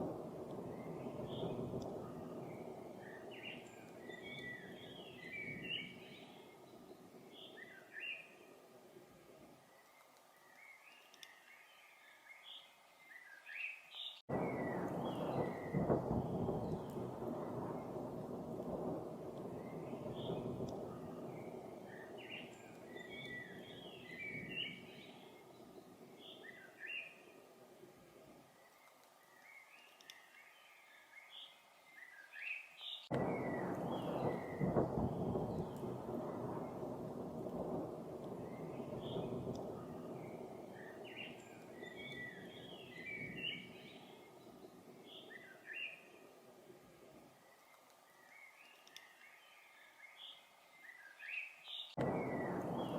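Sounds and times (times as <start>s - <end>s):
low thunder rumble: 0.0s - 7.8s, 14.3s - 27.8s, 33.1s - 47.3s, 52.0s - 52.9s
songbird chirping: 0.0s - 52.9s.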